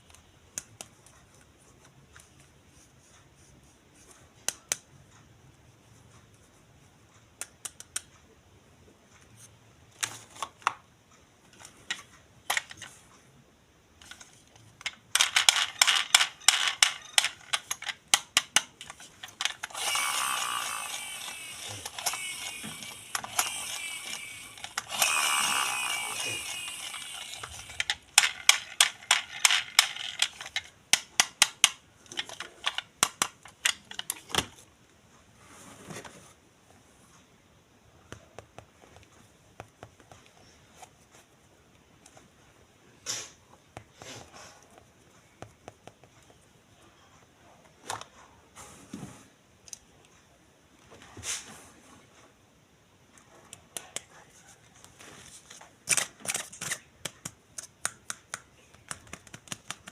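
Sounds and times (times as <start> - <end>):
plastic toy clicking: 14.0 - 34.4
whirring ratchet: 19.6 - 30.5.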